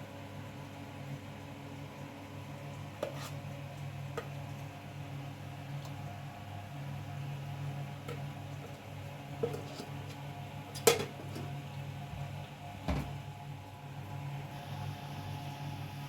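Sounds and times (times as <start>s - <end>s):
dishes and utensils handled: 9.4s - 9.9s, 10.8s - 11.5s.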